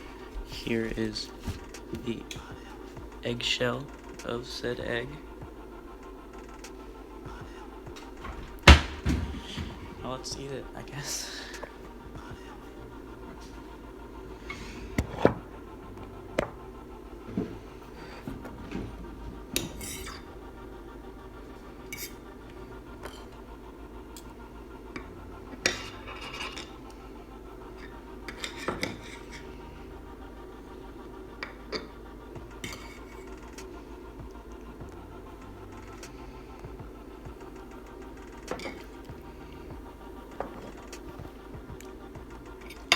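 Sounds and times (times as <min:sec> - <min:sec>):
low steady hum: 0:00.0 - 0:42.9
cutlery scraping on a plate: 0:19.6 - 0:20.3, 0:21.9 - 0:22.2, 0:25.7 - 0:26.7, 0:28.3 - 0:29.5.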